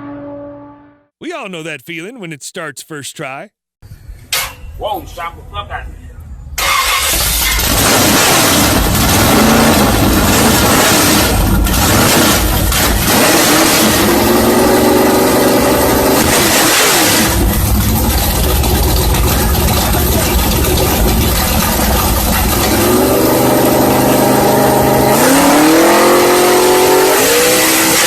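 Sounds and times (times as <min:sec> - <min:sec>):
car engine revving: 0:06.6 - 0:28.0.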